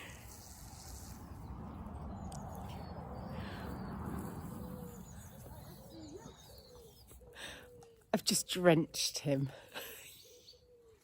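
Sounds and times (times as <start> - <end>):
faint bird chirps: 2.1 - 8.2, 10.0 - 11.0.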